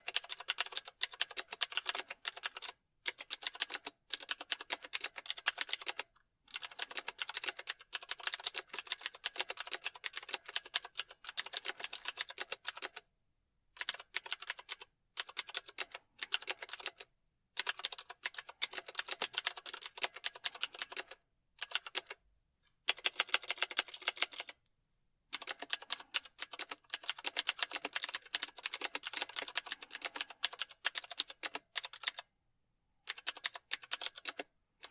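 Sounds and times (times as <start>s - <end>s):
keyboard typing clicks: 33.1s - 34.9s.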